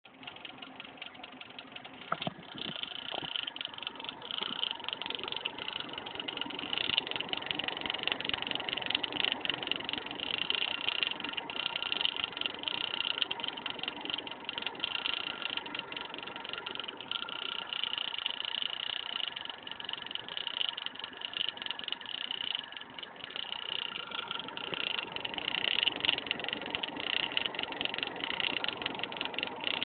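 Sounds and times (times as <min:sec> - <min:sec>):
cooling fan rattling: 0:00.1 - 0:29.9.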